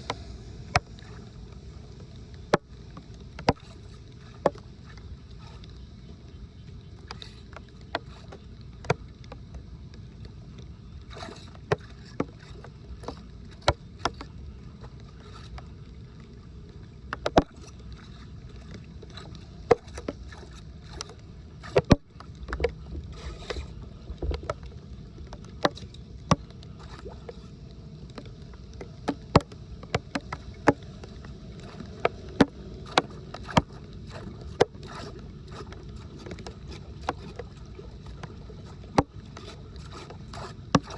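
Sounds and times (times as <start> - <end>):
sharp knocks and clicks: 21.7 - 22.8, 28.2 - 30.8, 32.0 - 33.8.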